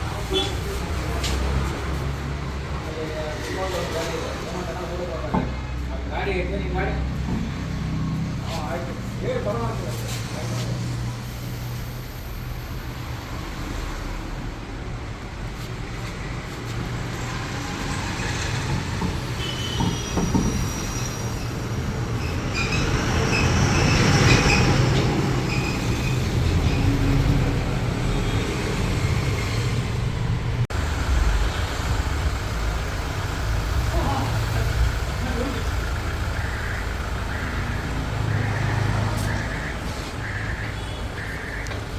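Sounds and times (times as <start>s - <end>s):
high squeaks: 19.1s - 27.3s
vehicle engine hum: 21.2s - 41.9s.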